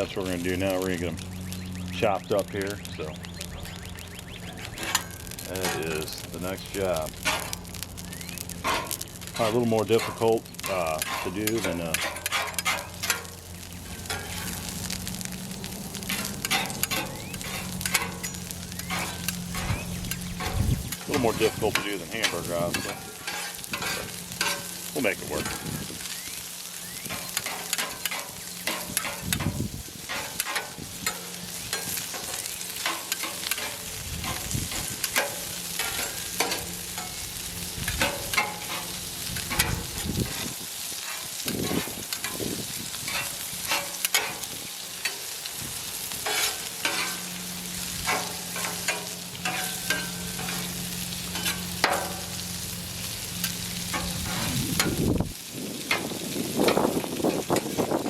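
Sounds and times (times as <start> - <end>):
hot dogs sizzling on a griddle: 0.0 - 58.0
metal tools clacking on griddle: 4.5 - 7.8, 8.6 - 14.7, 16.0 - 25.8, 27.1 - 45.3, 46.2 - 52.4, 53.4 - 55.1.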